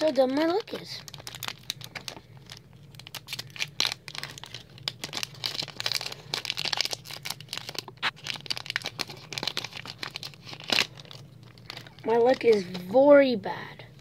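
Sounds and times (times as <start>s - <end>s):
foil wrapper tearing and crinkling: 0.0s - 13.0s.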